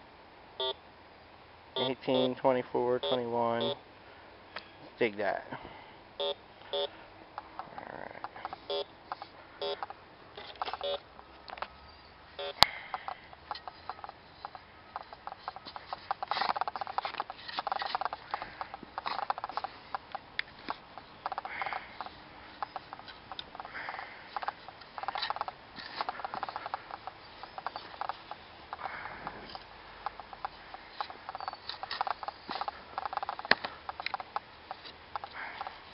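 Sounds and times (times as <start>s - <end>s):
metal detector beeps: 0.6s - 0.8s, 1.8s - 2.3s, 3.0s - 3.8s, 6.2s - 6.9s, 8.5s - 11.0s, 11.7s - 19.8s, 24.3s - 28.9s, 30.0s - 35.7s.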